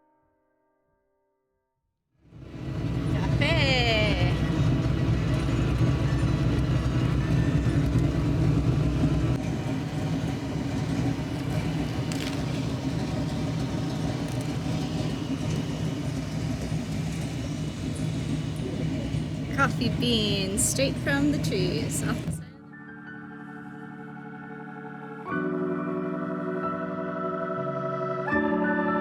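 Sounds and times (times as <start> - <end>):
car engine and road rumble: 2.4 - 22.5.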